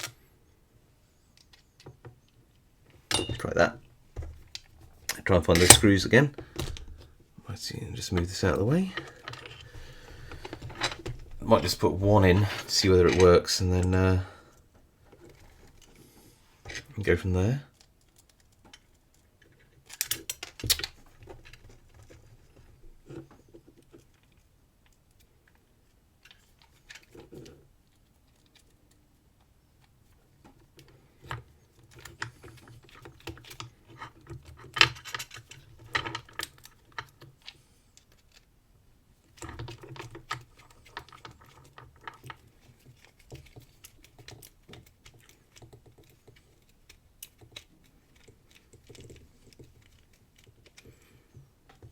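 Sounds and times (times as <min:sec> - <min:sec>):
small metal clicks and taps: 0:39.4 - 0:51.9.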